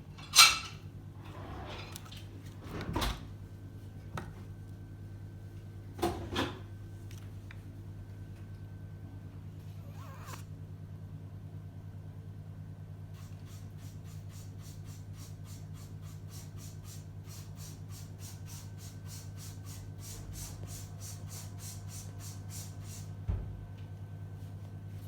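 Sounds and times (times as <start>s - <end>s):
thump: 23.3s - 23.6s.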